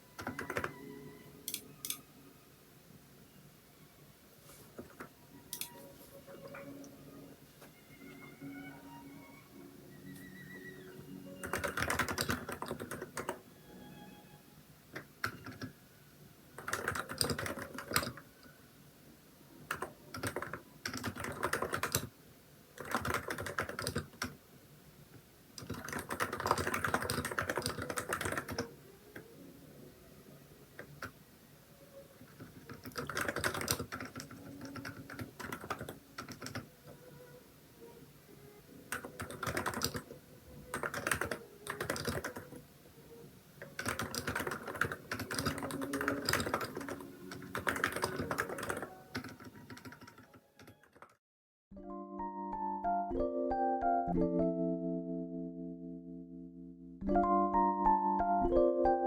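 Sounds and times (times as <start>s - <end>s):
keyboard typing: 0.1s - 2.0s, 11.3s - 13.4s, 14.9s - 15.8s, 16.6s - 18.5s, 19.6s - 22.1s, 22.8s - 24.4s, 25.6s - 29.3s, 30.8s - 31.2s, 32.2s - 37.1s, 38.8s - 42.6s, 43.6s - 51.2s.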